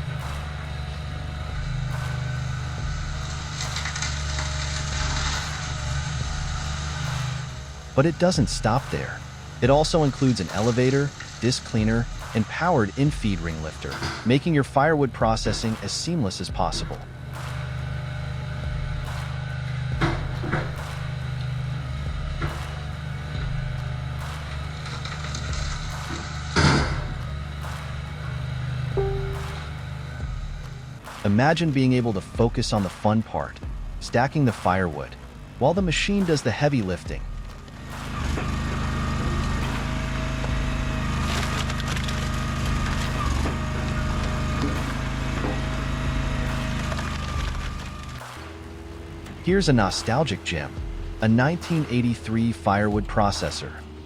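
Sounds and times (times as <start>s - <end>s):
machine whine: 0.0s - 12.3s
machine engine running: 0.0s - 14.4s, 37.2s - 49.7s
engine hum: 0.0s - 54.0s
wood cracking as it splits: 3.3s - 7.5s, 38.3s - 48.2s.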